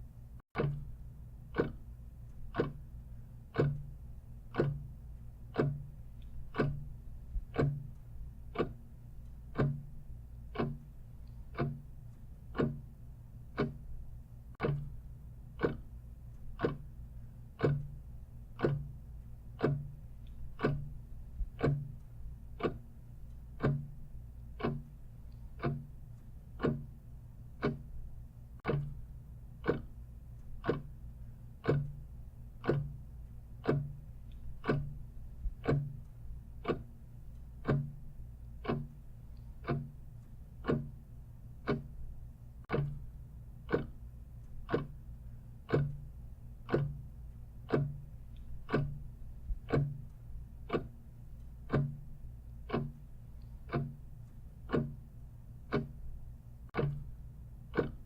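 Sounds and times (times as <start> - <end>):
clock ticking: 0.0 - 58.0
faint low hum: 0.0 - 58.0.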